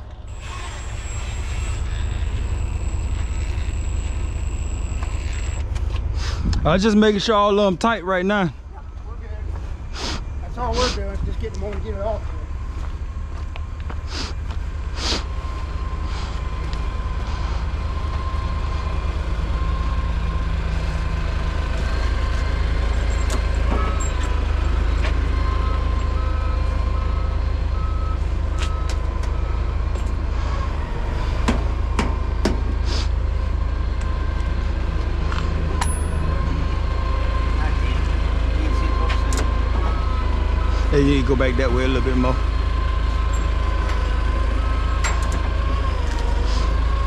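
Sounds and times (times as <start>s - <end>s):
diesel engine rumbling: 0.0s - 47.0s
reversing alarm beeping: 0.3s - 5.6s, 21.9s - 30.1s, 35.8s - 46.0s.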